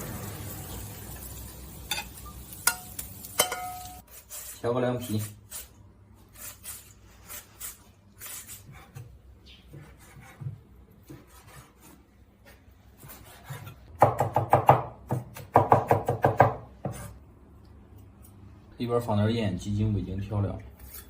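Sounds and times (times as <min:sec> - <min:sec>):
knife chopping on wooden board: 0:09.7 - 0:17.2.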